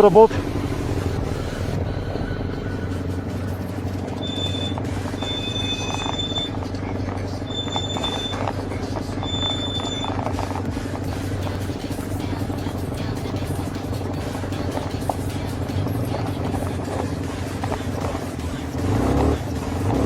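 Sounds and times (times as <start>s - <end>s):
motorcycle engine running steadily: 0.0s - 20.0s
brief high-pitched tones: 9.2s - 10.3s.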